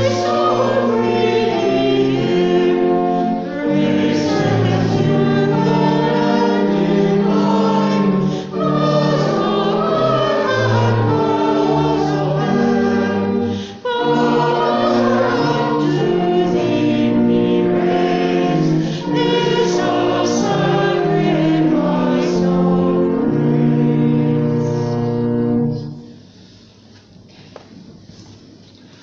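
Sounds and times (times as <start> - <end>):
congregation singing a hymn: 0.0 - 26.1.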